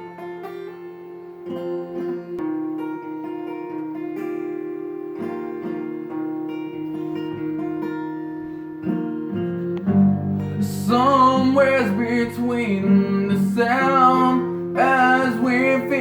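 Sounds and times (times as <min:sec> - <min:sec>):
acoustic guitar picked melody: 0:00.0 - 0:16.0
person singing: 0:10.5 - 0:16.0.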